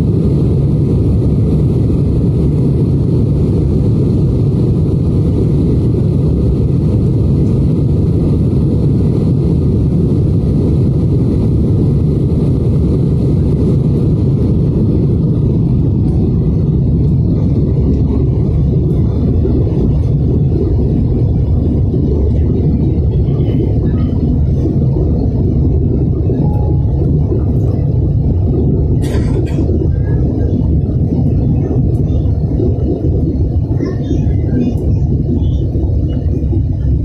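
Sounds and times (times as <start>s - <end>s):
airliner engine and airflow rumble: 0.0s - 37.0s
faint voices: 20.6s - 37.0s.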